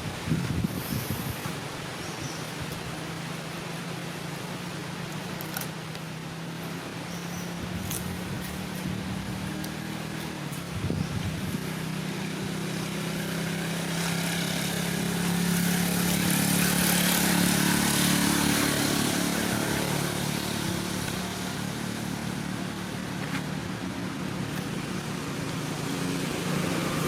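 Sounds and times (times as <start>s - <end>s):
motor engine running: 7.5s - 27.0s.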